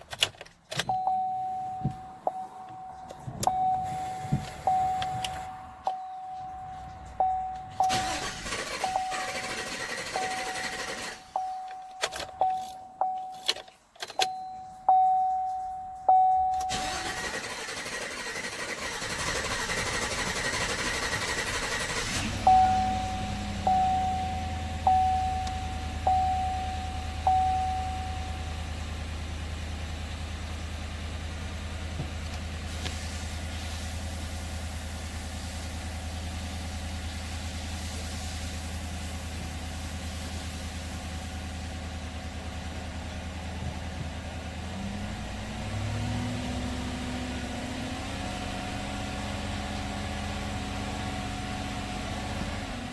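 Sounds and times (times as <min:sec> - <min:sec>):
dashboard warning chime: 0:00.7 - 0:19.6, 0:20.4 - 0:29.1
truck engine idling: 0:00.9 - 0:13.4, 0:14.3 - 0:52.9.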